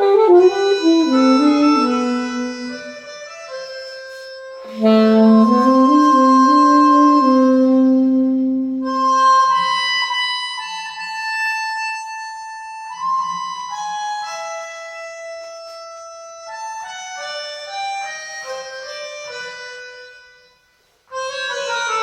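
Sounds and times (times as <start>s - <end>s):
low saxophone note: 0.0s - 3.1s, 4.6s - 9.6s
melodica long notes: 0.0s - 22.0s.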